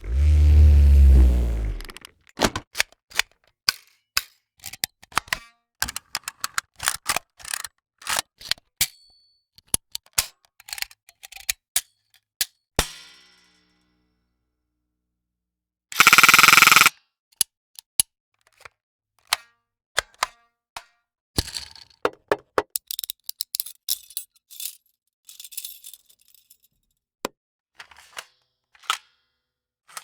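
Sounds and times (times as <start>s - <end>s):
loud fast rattle: 16.0s - 16.9s.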